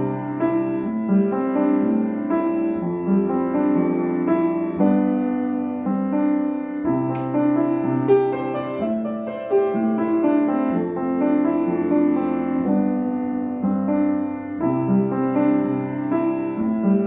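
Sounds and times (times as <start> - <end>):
piano music: 0.0 - 17.0
brief click: 7.1 - 7.3.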